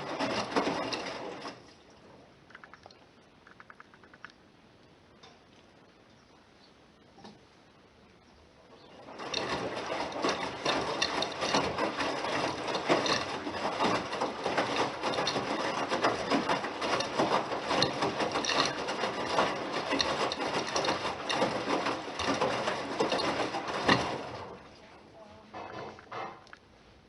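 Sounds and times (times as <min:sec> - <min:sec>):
washing machine drum turning: 0:00.0 - 0:01.6, 0:09.0 - 0:24.7
laundry tumbling and rattling: 0:00.0 - 0:01.8, 0:08.8 - 0:24.9.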